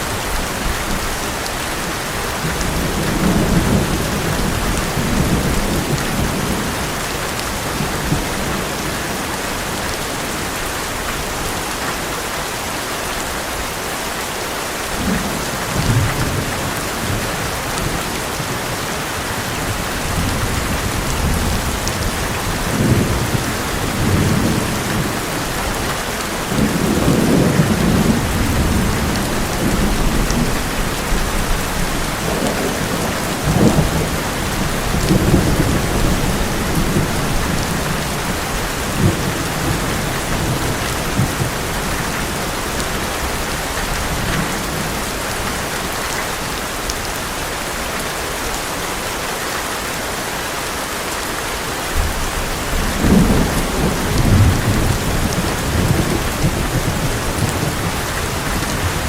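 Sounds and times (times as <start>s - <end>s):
heavy rain on a metal roof: 0.0s - 59.0s
rolling thunder: 19.4s - 42.4s, 52.0s - 59.0s.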